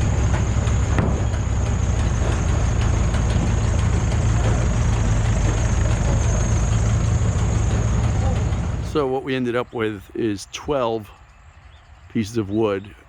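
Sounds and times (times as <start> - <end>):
large engine idling: 0.0 - 13.0.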